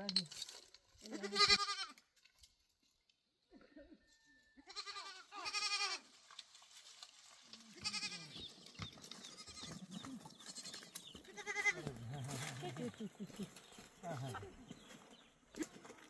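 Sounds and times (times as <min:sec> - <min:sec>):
goats bleating: 0:01.1 - 0:02.0, 0:04.6 - 0:06.1, 0:07.6 - 0:08.5, 0:09.2 - 0:13.0.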